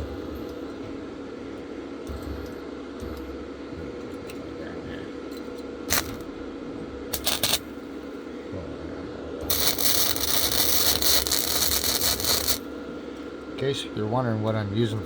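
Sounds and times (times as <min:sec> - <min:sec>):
welder arc crackling: 0:05.9 - 0:06.1, 0:07.1 - 0:07.7, 0:09.5 - 0:12.6
welder low hum: 0:07.1 - 0:07.6, 0:09.5 - 0:12.6.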